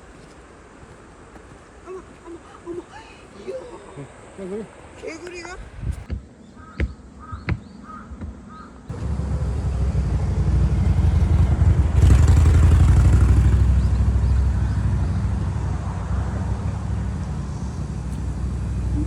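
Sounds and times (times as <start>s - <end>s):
vehicle engine humming: 8.9s - 19.0s.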